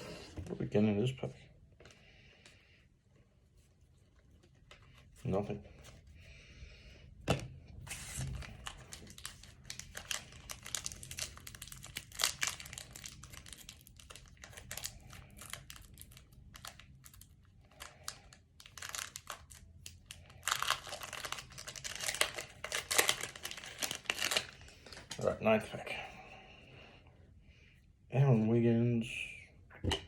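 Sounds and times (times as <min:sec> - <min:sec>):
foil wrapper crinkling and tearing: 0:07.9 - 0:25.3.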